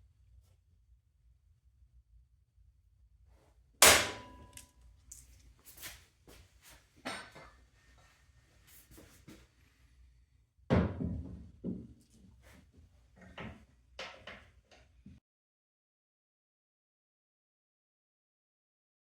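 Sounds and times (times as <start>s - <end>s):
heavy steel parts clanking: 3.8s - 4.6s.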